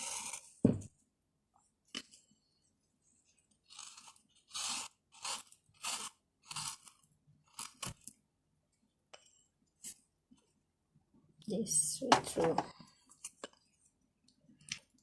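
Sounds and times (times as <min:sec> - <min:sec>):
scraping inside of banana peel: 0:00.0 - 0:00.6, 0:03.6 - 0:08.0.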